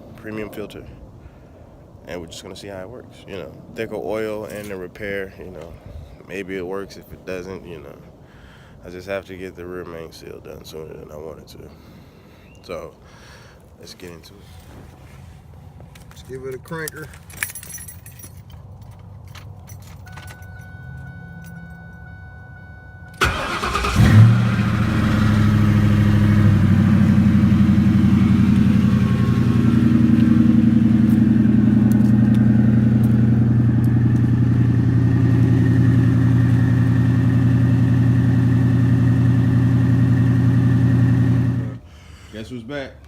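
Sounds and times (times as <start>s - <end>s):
car engine starting and idling: 19.4s - 41.8s.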